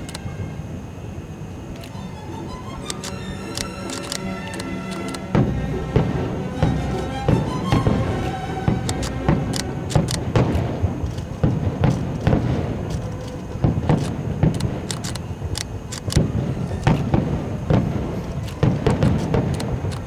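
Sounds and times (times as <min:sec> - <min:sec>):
fireworks booms and bangs: 0:05.2 - 0:20.0.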